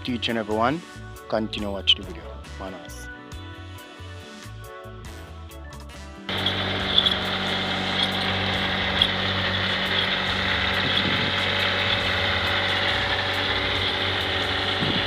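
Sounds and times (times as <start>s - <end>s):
paving machine engine running: 6.3s - 15.0s
sharp ticks: 6.3s - 15.0s.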